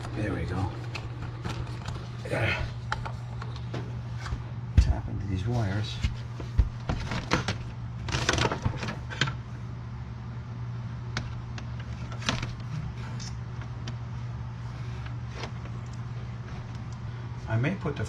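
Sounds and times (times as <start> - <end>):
steady low hum: 0.0 - 18.0
clicks and taps on wiring: 11.1 - 14.0.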